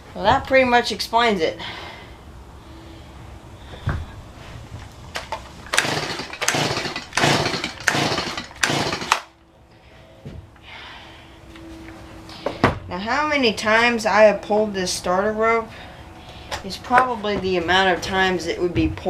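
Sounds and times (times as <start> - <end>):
chainsaw recoil starter pulls: 5.2 - 9.3.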